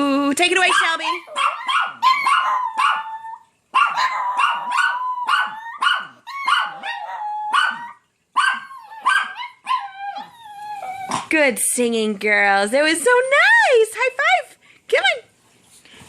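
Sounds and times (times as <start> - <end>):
dog howling and yipping: 0.6 - 11.2.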